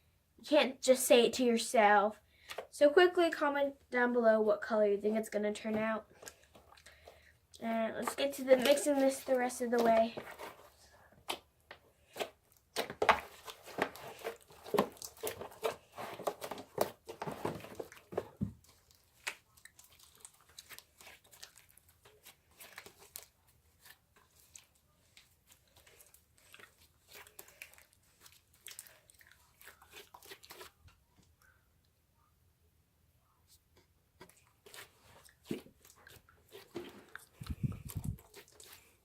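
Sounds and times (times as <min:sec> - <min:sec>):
slime squishing and crackling: 0:12.0 - 0:30.9.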